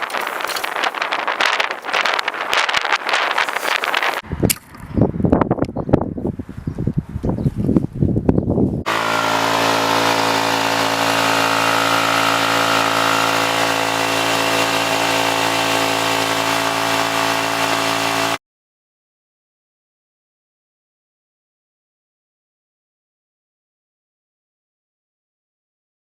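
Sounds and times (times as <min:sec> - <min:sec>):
chainsaw running: 0:08.9 - 0:18.4.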